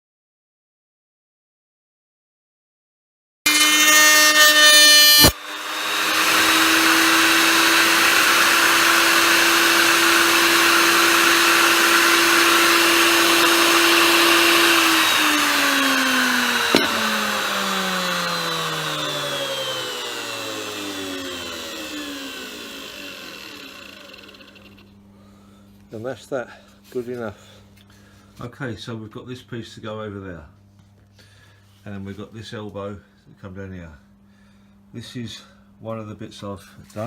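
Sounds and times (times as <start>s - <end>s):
electric router cutting wood: 3.5s - 24.9s.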